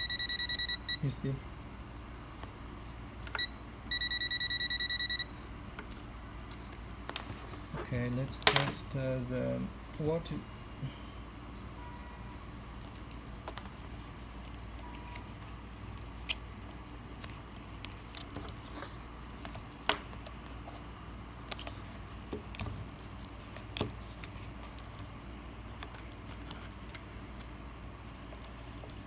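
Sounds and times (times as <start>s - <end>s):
low steady hum: 0.0s - 29.0s.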